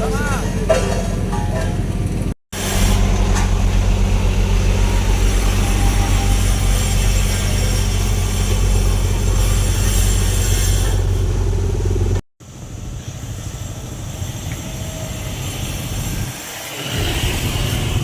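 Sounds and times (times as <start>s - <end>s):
heavy machinery engine humming: 0.0s - 18.0s
vehicle engine noise: 0.0s - 18.0s.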